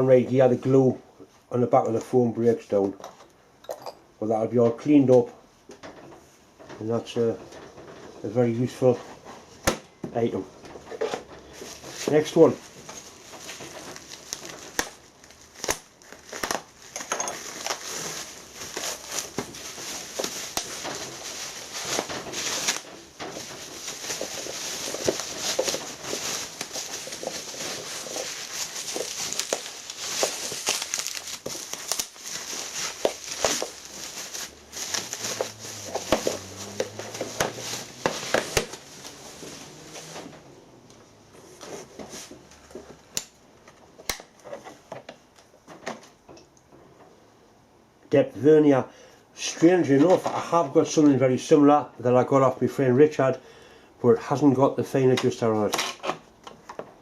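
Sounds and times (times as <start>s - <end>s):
small sharp crackles and knocks: 9.2s - 41.0s, 41.6s - 47.1s
wrapping paper crinkling: 11.4s - 40.4s.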